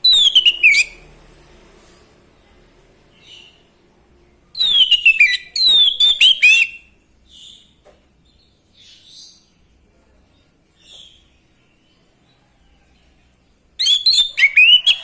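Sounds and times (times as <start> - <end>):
thrush singing whistled phrases: 0.0 - 1.0, 4.6 - 6.9, 13.8 - 15.0.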